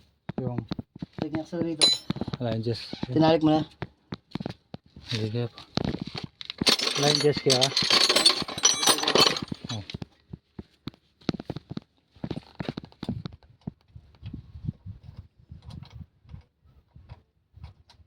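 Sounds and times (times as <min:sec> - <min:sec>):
hand tools clicking on metal: 0:06.6 - 0:10.0.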